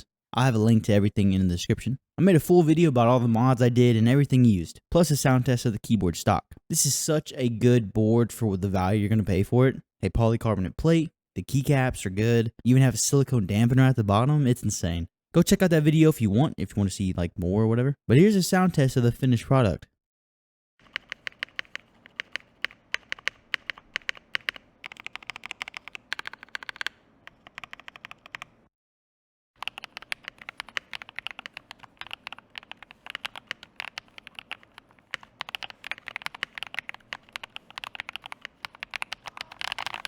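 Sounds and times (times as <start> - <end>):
mechanical keyboard typing: 20.8 - 28.6, 29.6 - 40.0.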